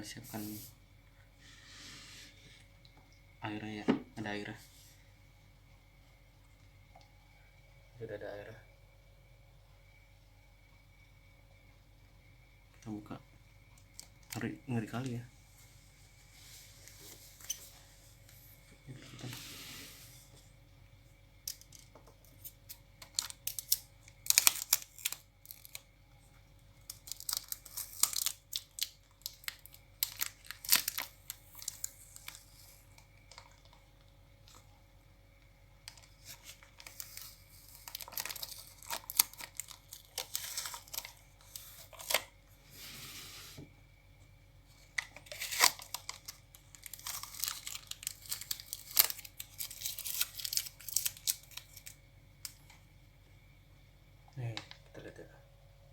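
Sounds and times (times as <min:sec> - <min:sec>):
packaging tearing and crinkling: 0:21.5 - 0:25.9, 0:26.8 - 0:33.6, 0:35.9 - 0:42.3, 0:45.0 - 0:52.0.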